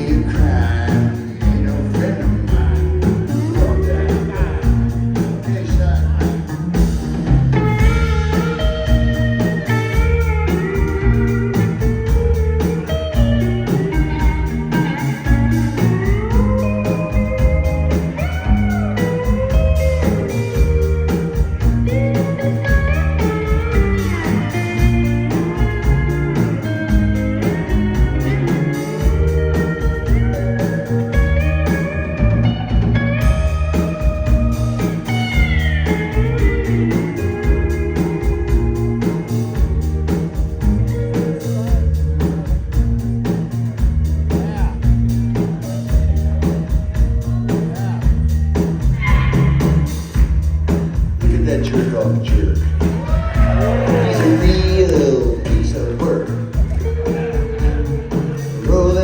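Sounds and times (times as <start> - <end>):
drum and bass groove: 0.0 - 59.0
electric guitar solo: 7.6 - 39.6, 48.9 - 50.2, 52.6 - 59.0.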